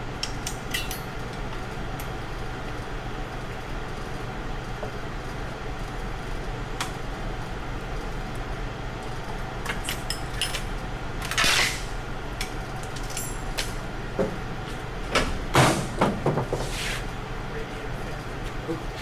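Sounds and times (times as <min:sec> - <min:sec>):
steady shop hum: 0:00.0 - 0:19.0.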